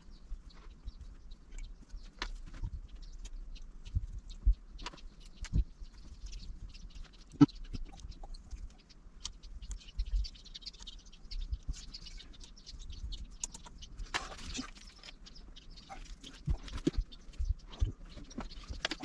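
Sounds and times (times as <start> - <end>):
small clicks and taps: 13.2 - 15.2.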